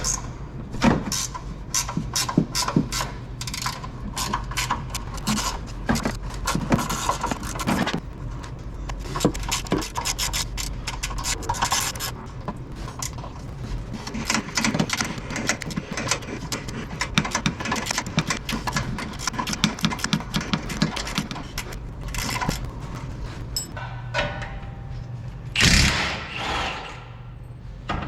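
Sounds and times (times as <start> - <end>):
metal tools clicking and scraping: 23.5 - 24.7.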